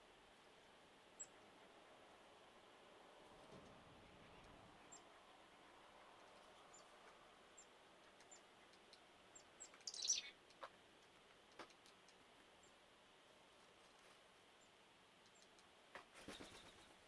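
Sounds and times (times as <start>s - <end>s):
birds chirping faintly: 0.0s - 17.0s
faint ticks: 15.2s - 15.8s.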